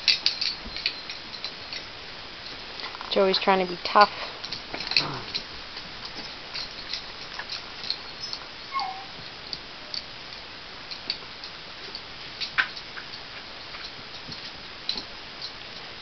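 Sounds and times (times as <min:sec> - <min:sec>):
dog whining: 0:08.2 - 0:09.2
dog nails clicking on floor: 0:10.9 - 0:15.9.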